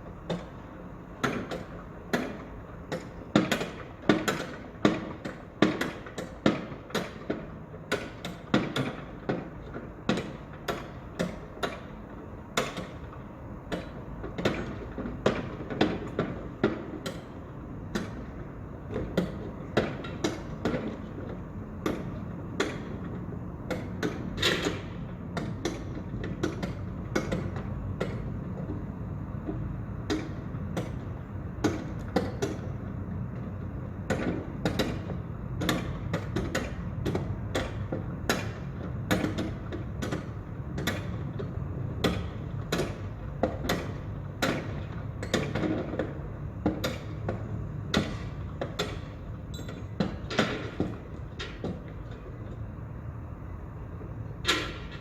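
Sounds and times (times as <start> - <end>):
sharp knocks and clanks: 33.4 - 52.6, 54.4 - 55.0.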